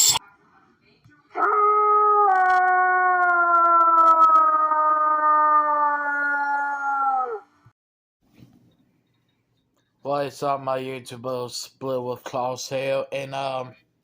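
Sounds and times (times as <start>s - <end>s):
long wolf-style howl: 1.4s - 7.5s.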